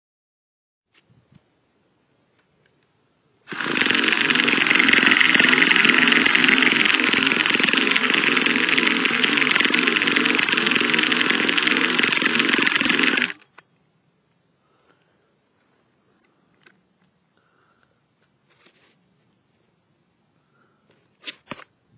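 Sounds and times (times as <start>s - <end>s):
electric starter spinning engine: 3.4s - 13.6s.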